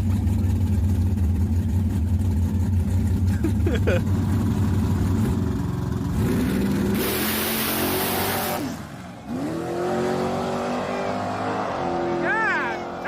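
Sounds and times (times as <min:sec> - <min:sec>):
car engine revving: 0:03.9 - 0:13.0.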